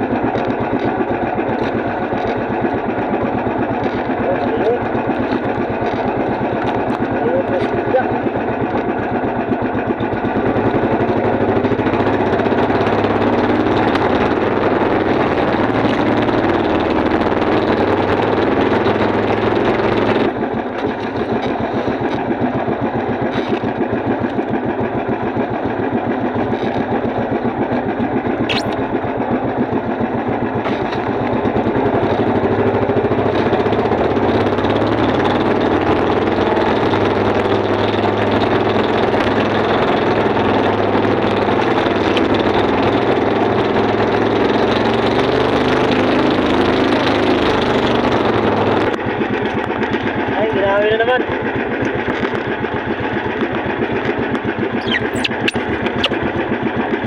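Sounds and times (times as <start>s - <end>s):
small boat engine running: 0.0s - 57.0s
brief high squeak: 28.5s - 28.9s, 54.8s - 56.3s.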